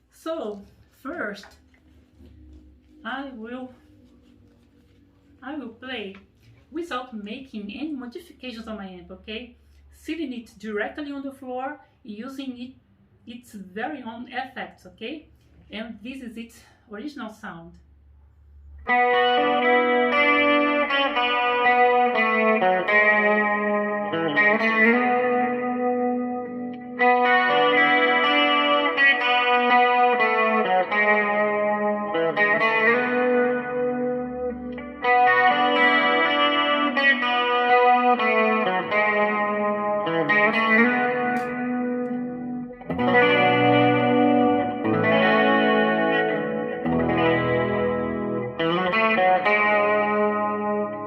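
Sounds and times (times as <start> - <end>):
electric guitar chords: 18.8 - 51.0.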